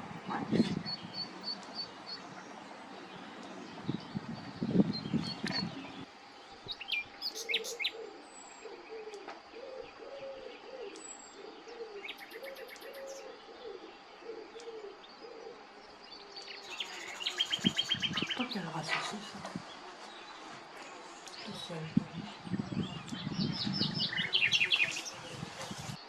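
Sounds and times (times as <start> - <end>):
low cooing bird: 7.2 - 19.9, 21.4 - 26.0
bird trill: 9.6 - 15.5, 23.0 - 25.8.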